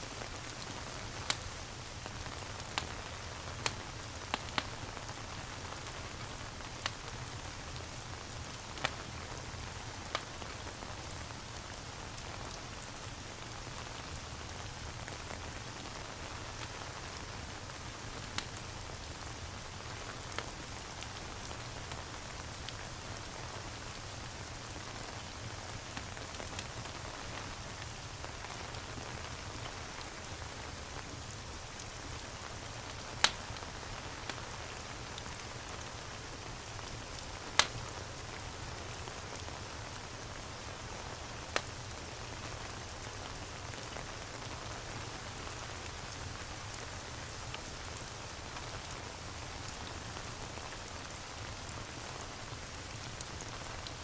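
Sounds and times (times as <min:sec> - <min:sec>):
steady rain: 0:00.0 - 0:54.0
fireplace crackling and popping: 0:00.1 - 0:54.0.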